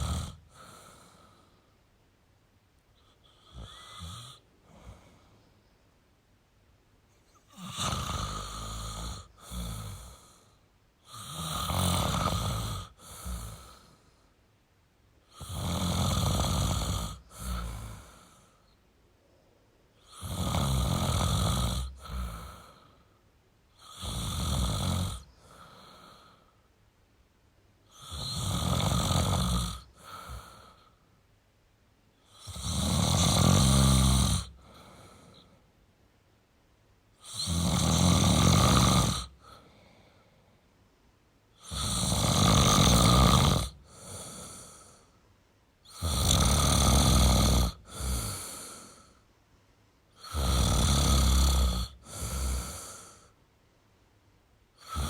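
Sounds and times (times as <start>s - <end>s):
man snoring: 0.0s - 1.4s, 3.2s - 5.1s, 7.5s - 14.0s, 15.3s - 18.5s, 20.0s - 23.0s, 23.8s - 26.4s, 27.9s - 30.9s, 32.2s - 35.5s, 37.2s - 39.7s, 41.6s - 45.1s, 45.8s - 49.2s, 50.2s - 53.4s, 54.8s - 55.0s.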